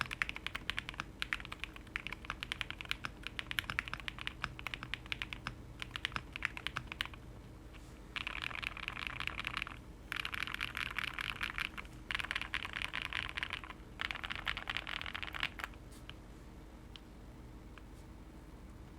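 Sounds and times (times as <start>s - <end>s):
typing on mechanical keyboard: 0.0s - 7.2s, 8.2s - 15.8s.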